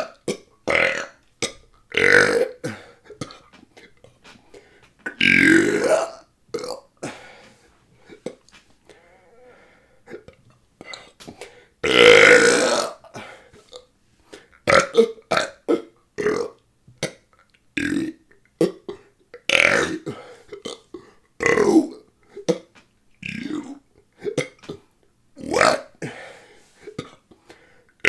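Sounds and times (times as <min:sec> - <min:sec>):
person belching: 0:00.0 - 0:03.2, 0:05.0 - 0:07.2, 0:11.8 - 0:13.2, 0:14.7 - 0:17.2, 0:17.8 - 0:24.8, 0:25.4 - 0:26.2.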